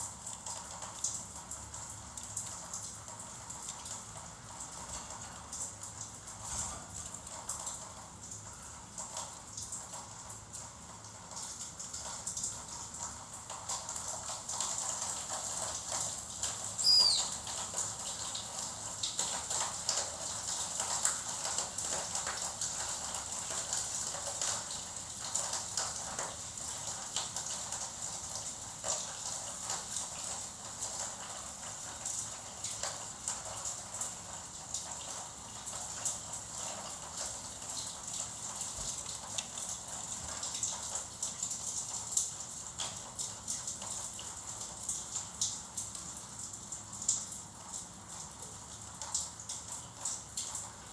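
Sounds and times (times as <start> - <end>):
finches ticking and tapping: 16.8 - 17.3
finch falling whistle call: 16.8 - 17.4.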